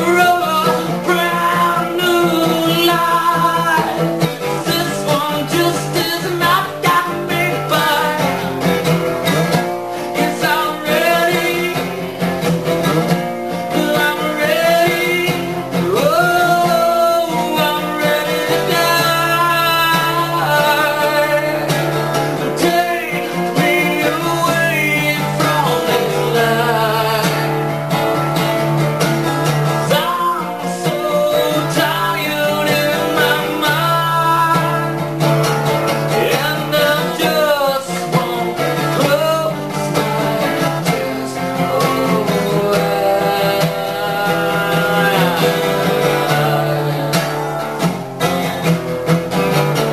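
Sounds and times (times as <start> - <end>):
acoustic guitar playing: 0.0 - 49.9
person singing: 0.0 - 49.9.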